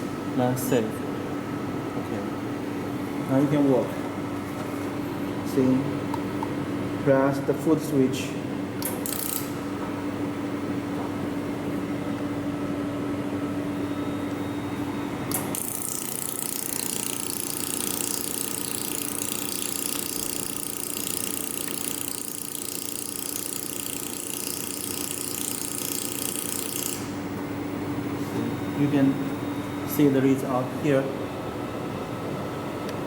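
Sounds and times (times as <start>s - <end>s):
machine humming: 0.0s - 33.0s.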